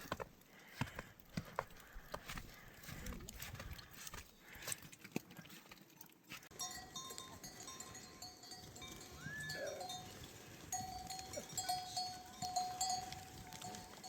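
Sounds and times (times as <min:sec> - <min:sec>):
sheep bells clinking: 0:06.5 - 0:14.0.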